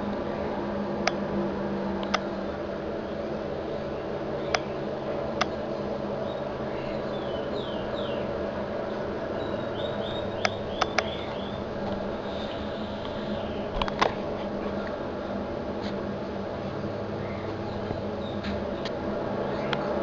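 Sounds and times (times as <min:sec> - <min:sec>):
sharp clicks: 0:02.0 - 0:02.2, 0:10.4 - 0:12.0
birds chirping: 0:03.0 - 0:15.5, 0:16.6 - 0:20.0.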